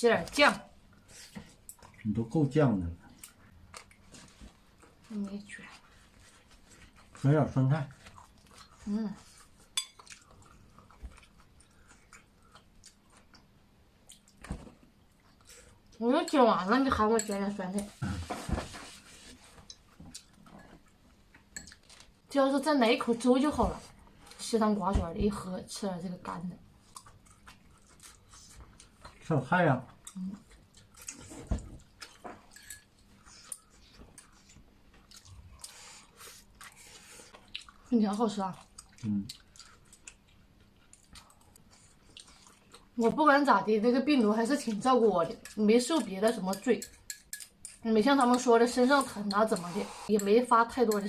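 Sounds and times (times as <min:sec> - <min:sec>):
faint chewing: 0:03.1 - 0:07.3, 0:07.9 - 0:16.0, 0:19.1 - 0:22.2, 0:26.8 - 0:43.2.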